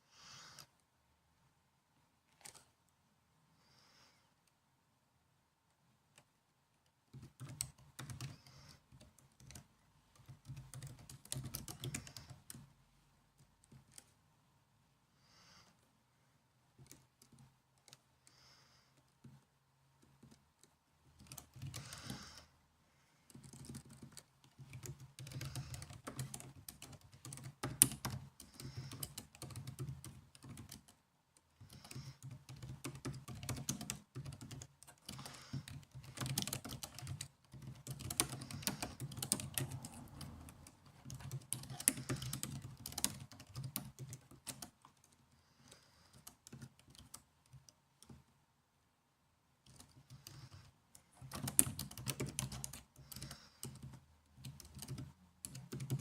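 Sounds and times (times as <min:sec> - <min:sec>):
typing on laptop keyboard: 0:02.4 - 0:02.7, 0:07.1 - 0:12.7, 0:13.4 - 0:14.2, 0:16.8 - 0:18.4, 0:20.0 - 0:22.5, 0:23.3 - 0:48.3, 0:49.6 - 0:56.0.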